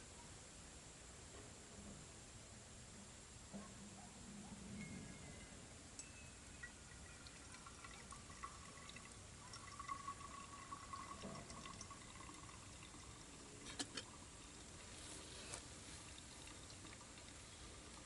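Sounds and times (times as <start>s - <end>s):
thin tones: 4.6s - 18.0s
liquid being poured: 6.5s - 18.0s.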